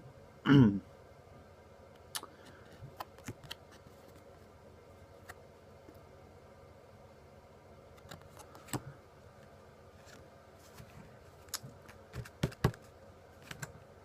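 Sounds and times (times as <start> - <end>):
trading cards clicking and tapping: 12.1 - 12.8.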